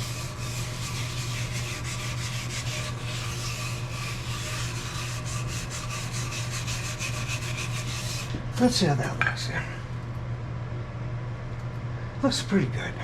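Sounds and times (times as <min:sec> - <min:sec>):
wire brush scrubbing metal: 0:00.0 - 0:08.4
steady low hum: 0:00.0 - 0:13.0.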